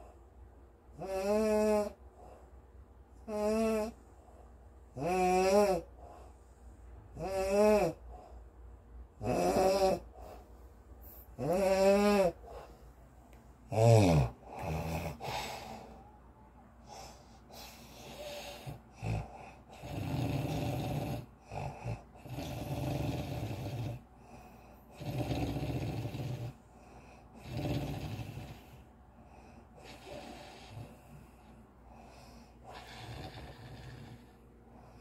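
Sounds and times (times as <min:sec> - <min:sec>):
heavy rasping snoring: 0:01.0 - 0:02.0, 0:03.2 - 0:04.0, 0:04.9 - 0:05.9, 0:07.1 - 0:08.0, 0:09.2 - 0:10.4, 0:11.3 - 0:12.6, 0:13.7 - 0:15.7, 0:17.6 - 0:24.0, 0:24.9 - 0:26.6, 0:27.3 - 0:28.8, 0:29.8 - 0:31.3, 0:32.0 - 0:34.4.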